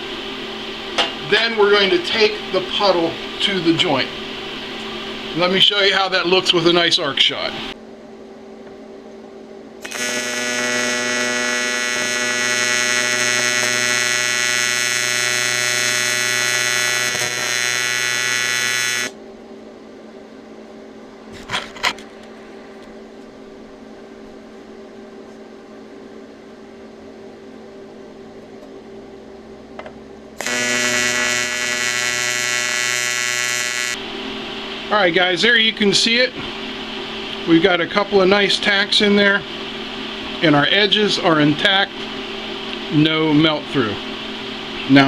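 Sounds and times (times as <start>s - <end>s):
welding arc buzzing: 0.0s - 6.7s, 9.8s - 19.2s, 30.4s - 45.0s
low machine hum: 0.0s - 45.0s.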